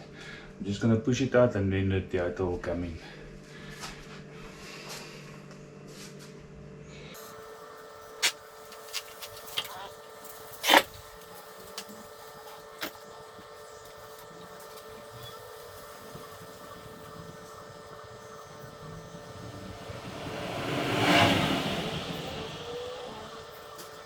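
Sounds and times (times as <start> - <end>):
vehicle rushing past: 18.2 - 24.0.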